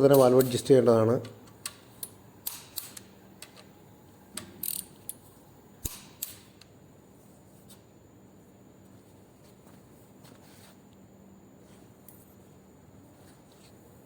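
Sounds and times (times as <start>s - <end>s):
metallic tool clicks: 1.6s - 3.6s, 4.4s - 5.2s, 5.8s - 6.7s.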